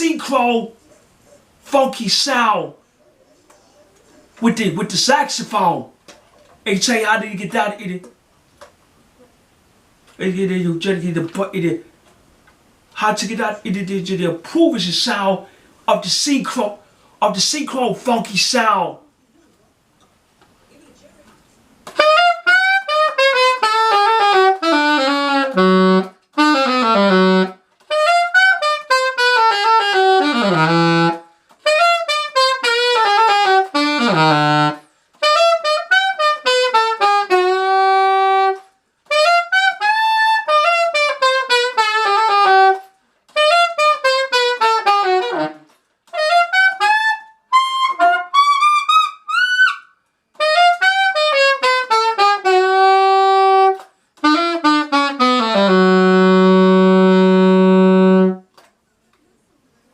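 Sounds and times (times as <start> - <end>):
alto saxophone funk phrases: 12.9 - 19.0, 21.8 - 58.6.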